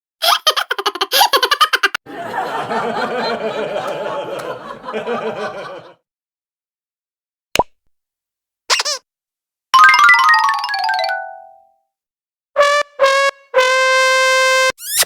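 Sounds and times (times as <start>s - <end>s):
group of people laughing: 0.2s - 6.0s.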